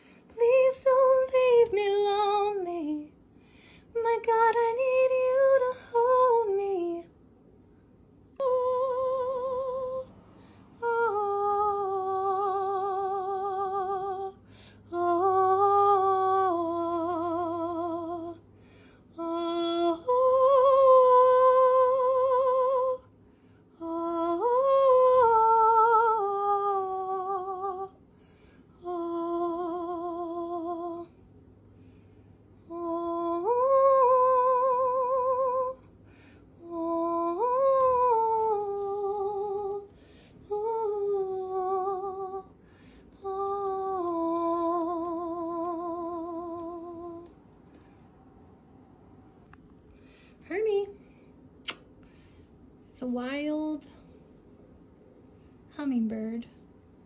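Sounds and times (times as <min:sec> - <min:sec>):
woman singing wordless notes: 0:08.4 - 0:10.1, 0:10.8 - 0:18.4, 0:19.1 - 0:23.1, 0:23.8 - 0:28.0, 0:28.8 - 0:31.2, 0:32.6 - 0:35.9, 0:36.6 - 0:42.6.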